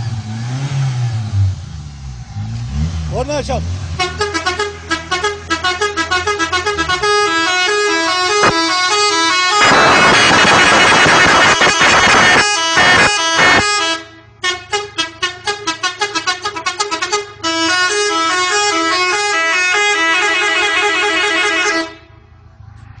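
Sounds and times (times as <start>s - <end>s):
car air horn blasts: 4.0s - 22.2s.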